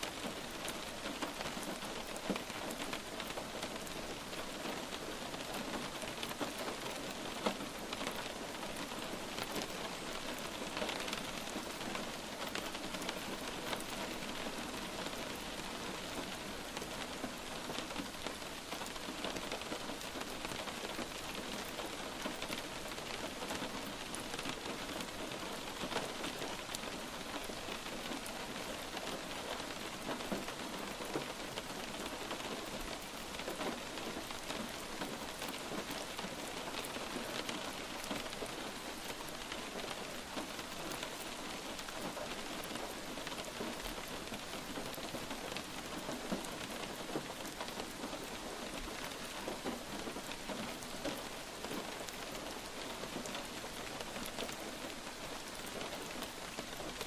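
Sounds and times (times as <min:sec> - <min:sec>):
light rain falling: 0:00.0 - 0:57.0.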